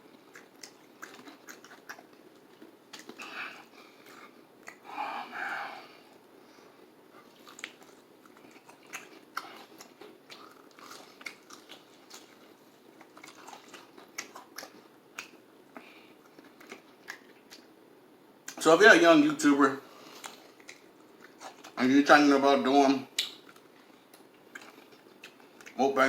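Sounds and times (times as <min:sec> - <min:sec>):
chewing crunchy food: 0:00.0 - 0:04.8, 0:07.1 - 0:17.8, 0:20.0 - 0:21.8, 0:23.1 - 0:25.8
wet mouth clicks: 0:04.6 - 0:04.8, 0:20.2 - 0:21.8, 0:23.2 - 0:25.8.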